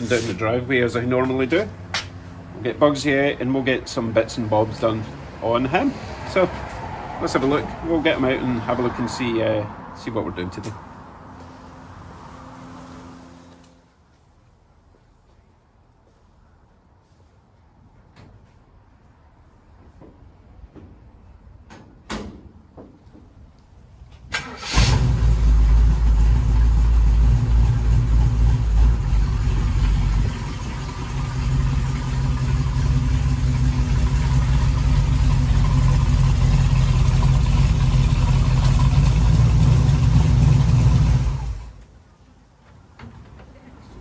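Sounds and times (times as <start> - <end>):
car engine starting and running: 24.2 - 41.9.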